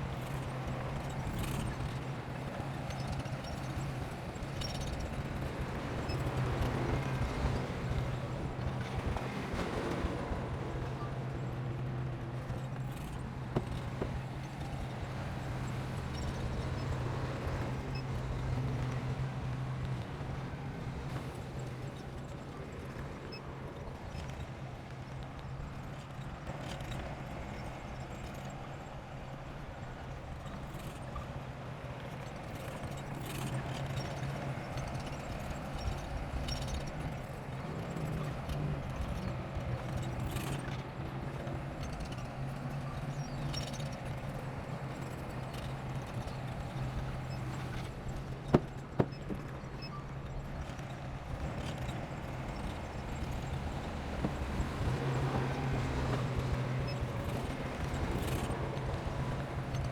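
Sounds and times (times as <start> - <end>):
tracks clanking and clattering: 45.0 - 49.7, 50.5 - 59.9
bulldozer diesel engine running: 50.5 - 59.9.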